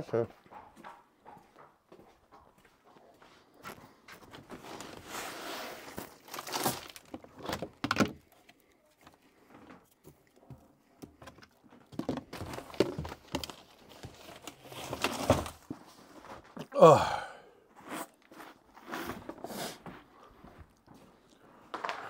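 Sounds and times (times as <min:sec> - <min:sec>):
rustling: 0:03.6 - 0:16.6.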